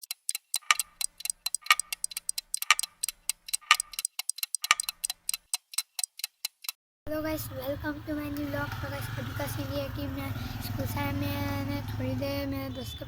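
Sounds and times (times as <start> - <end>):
clock ticking: 0.0 - 6.8.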